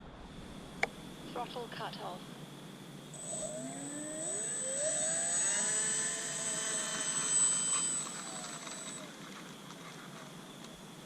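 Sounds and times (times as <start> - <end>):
model plane motor whine: 3.0 - 11.0.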